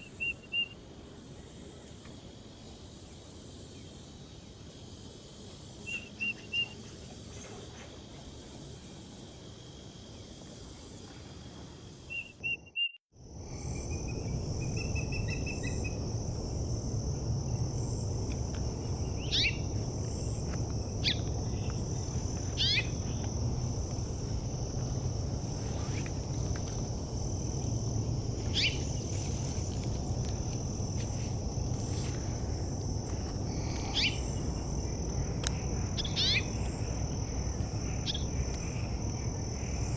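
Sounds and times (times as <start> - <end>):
high insect drone: 0.0 - 12.2, 13.2 - 39.9
sharp down-sweeping bird calls: 13.6 - 16.0, 18.8 - 23.3, 28.5 - 29.1, 33.6 - 34.6, 35.7 - 37.0.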